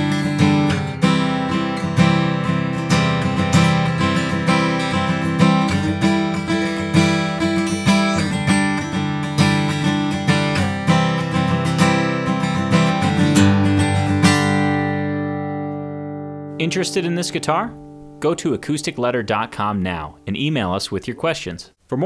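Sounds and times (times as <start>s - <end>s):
acoustic guitar strummed chords: 0.0s - 20.7s.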